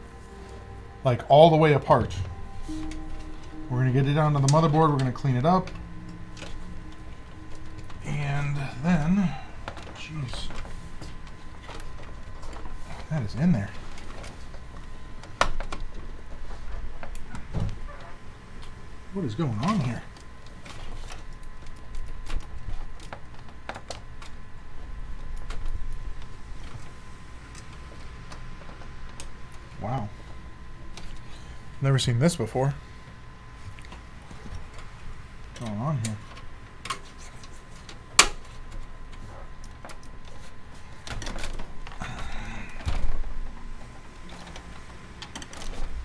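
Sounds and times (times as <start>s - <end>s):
steady low hum: 0.0s - 46.0s
clicks of computer parts: 33.7s - 42.0s.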